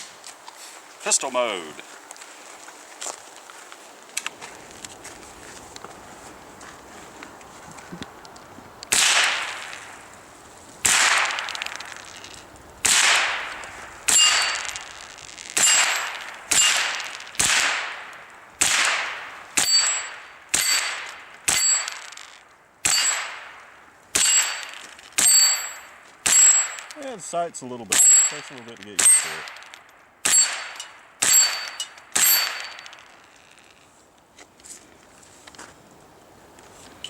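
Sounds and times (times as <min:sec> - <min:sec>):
rifle shots echoing: 0:08.9 - 0:09.9, 0:10.8 - 0:11.9, 0:12.8 - 0:14.9, 0:15.6 - 0:22.2, 0:22.8 - 0:27.0, 0:27.9 - 0:33.2
metallic ring: 0:14.1 - 0:14.9, 0:19.6 - 0:22.3, 0:22.9 - 0:23.3, 0:24.2 - 0:27.0, 0:28.0 - 0:33.2.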